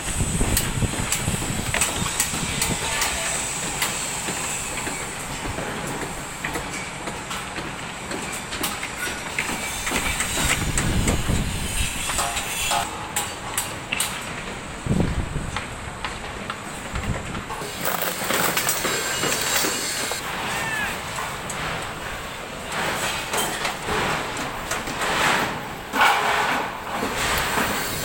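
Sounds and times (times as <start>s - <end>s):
machinery running: 17.6s - 20.3s.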